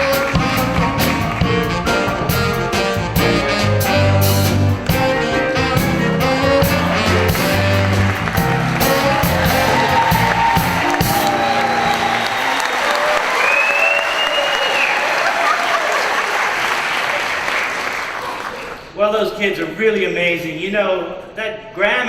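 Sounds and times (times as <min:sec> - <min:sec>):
drum hits: 0:00.0 - 0:11.5
bass line: 0:00.0 - 0:12.4
band music: 0:00.0 - 0:14.3.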